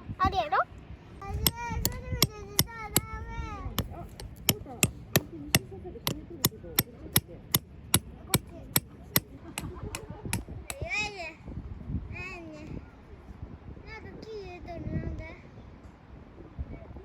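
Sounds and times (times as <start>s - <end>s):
hammer striking hard object: 3.8s - 5.3s.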